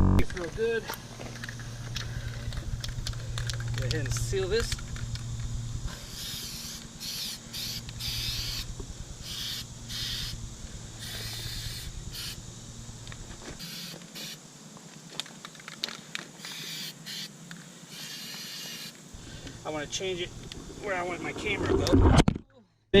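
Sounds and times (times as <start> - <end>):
aerosol can spraying: 5.9 - 10.4, 11.0 - 12.4, 13.2 - 14.4, 16.4 - 19.1.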